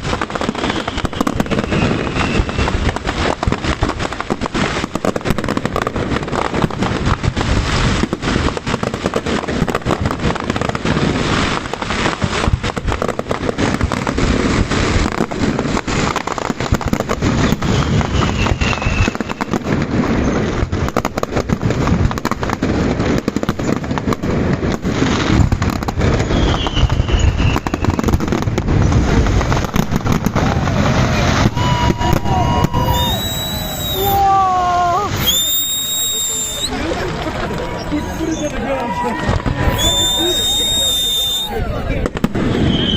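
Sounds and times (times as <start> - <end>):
fireworks cracking and banging: 0.0 - 42.9
falling firework whistle: 0.4 - 3.4, 17.3 - 19.7, 26.1 - 28.2, 29.7 - 36.8, 37.8 - 41.7, 42.4 - 42.9.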